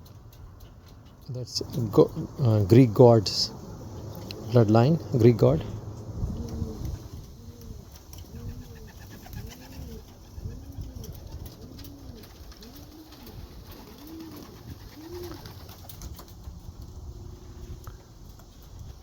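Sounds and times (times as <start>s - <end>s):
pigeon cooing: 1.4s - 16.4s.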